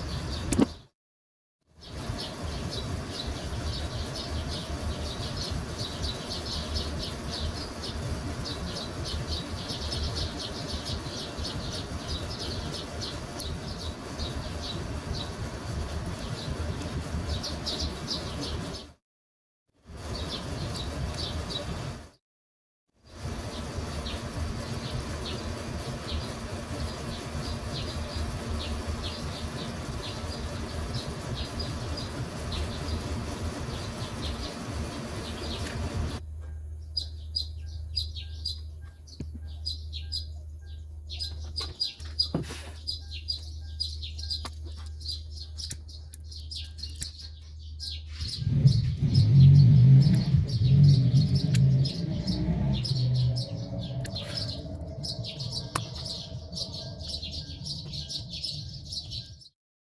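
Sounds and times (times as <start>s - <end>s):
small birds chirping: 0.0s - 0.9s, 1.8s - 19.0s, 20.0s - 22.1s, 23.2s - 59.6s
steady low hum: 1.8s - 19.0s, 19.9s - 22.2s, 23.0s - 41.6s, 42.2s - 59.5s.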